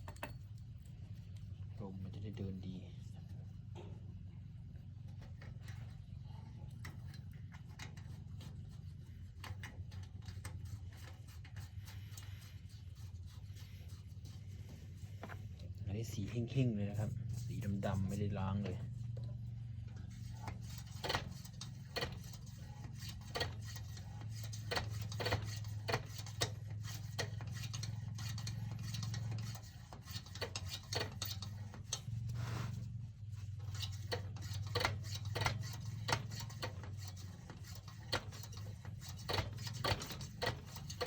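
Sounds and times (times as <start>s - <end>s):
steady low hum: 0.0s - 41.0s
hand air pump clicking: 33.7s - 41.0s.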